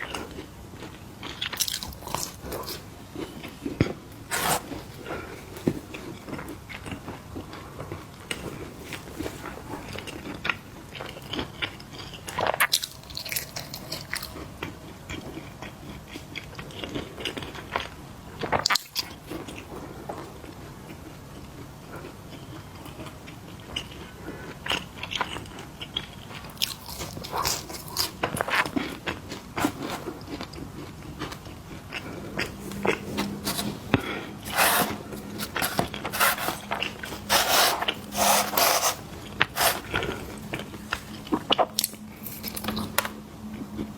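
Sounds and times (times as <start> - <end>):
chewing: 0.0 - 19.6, 21.9 - 43.9
crunchy snacks being eaten: 0.1 - 3.5, 9.9 - 14.5, 24.7 - 42.9.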